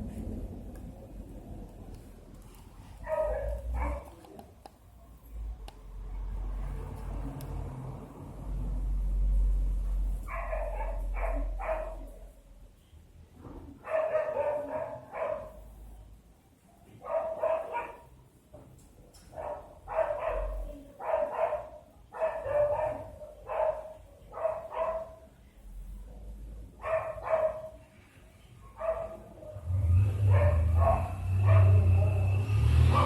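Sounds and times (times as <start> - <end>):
dog barking: 3.0 - 4.2, 10.3 - 12.2, 13.8 - 15.6, 16.8 - 18.1, 19.3 - 25.3, 26.8 - 27.8, 28.7 - 29.7, 30.3 - 32.3.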